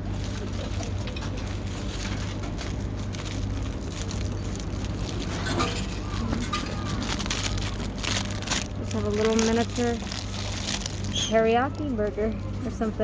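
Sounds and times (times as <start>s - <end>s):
steady low hum: 0.0s - 13.0s
paper crackling: 0.1s - 12.8s
paper wrapper rustling: 0.2s - 12.8s.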